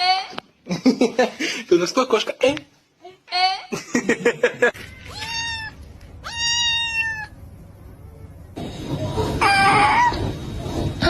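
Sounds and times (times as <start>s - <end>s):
cat meowing: 4.9s - 7.4s.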